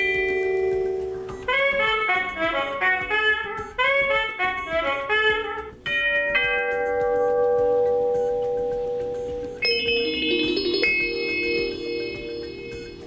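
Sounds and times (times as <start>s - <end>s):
door chime melody: 5.9s - 13.0s.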